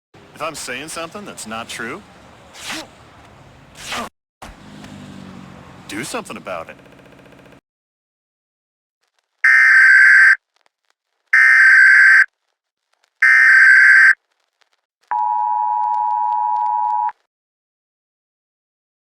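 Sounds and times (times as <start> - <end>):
data tones: 9.5 - 10.4, 11.4 - 12.3, 13.2 - 14.2
two-tone attention signal: 9.5 - 10.4, 11.4 - 12.3, 13.2 - 14.2.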